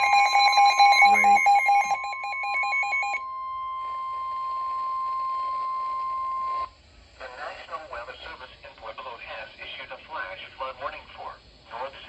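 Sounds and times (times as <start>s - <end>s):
steady high alert tone: 0.0s - 3.5s
beeping alarm pattern: 0.0s - 4.0s.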